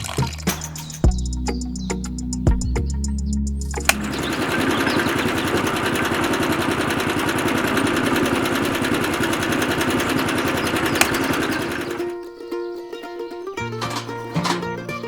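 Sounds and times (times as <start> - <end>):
small motor machine rattling: 3.8 - 12.2, 13.6 - 15.0.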